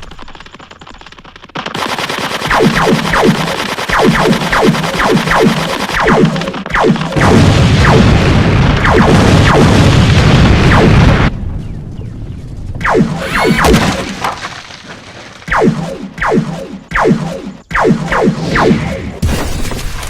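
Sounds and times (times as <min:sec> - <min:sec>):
deep rumbling boom: 0:07.2 - 0:14.2.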